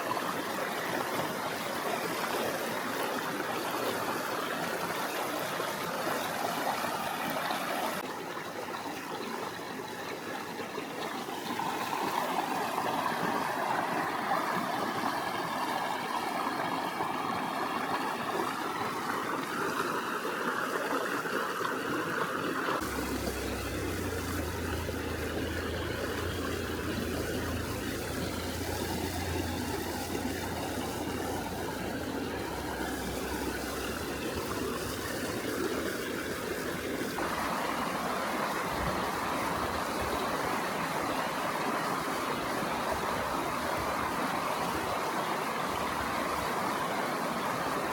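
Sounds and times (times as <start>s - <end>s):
river water flowing over stones: 0.0s - 47.9s
low steady rumble: 22.8s - 35.5s.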